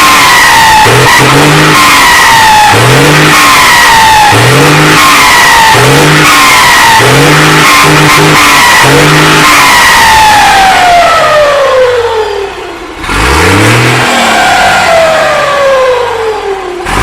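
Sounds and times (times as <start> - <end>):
falling turbo whistle: 0.0 - 12.0
truck engine revving: 0.0 - 17.0.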